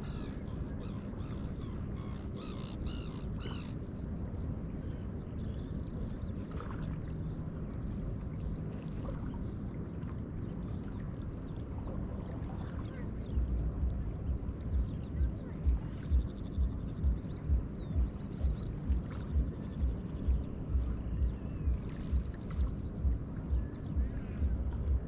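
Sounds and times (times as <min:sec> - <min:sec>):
river waves lapping and splashing: 0:00.0 - 0:25.0
low regular thumps: 0:13.3 - 0:25.0.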